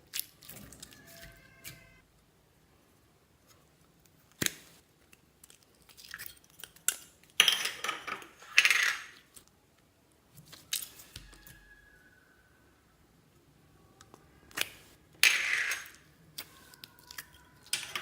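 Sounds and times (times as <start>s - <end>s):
small hard objects clattering: 15.2s - 18.0s.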